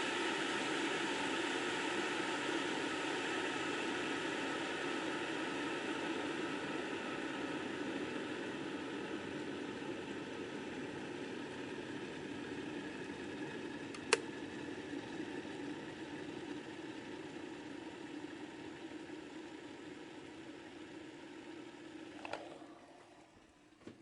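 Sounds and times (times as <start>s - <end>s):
kettle boiling water: 0.0s - 24.0s
kettle switch click: 13.9s - 14.3s, 22.2s - 22.5s.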